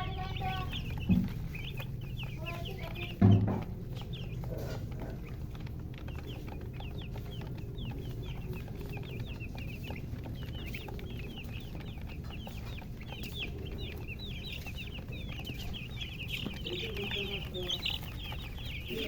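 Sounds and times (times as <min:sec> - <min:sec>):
chicks peeping: 0:00.0 - 0:19.0.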